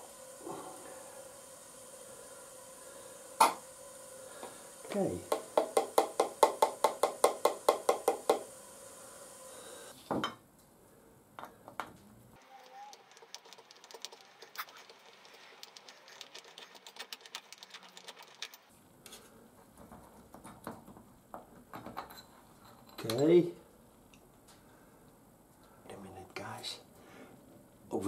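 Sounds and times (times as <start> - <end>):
rapid clicks: 12.6 - 18.7.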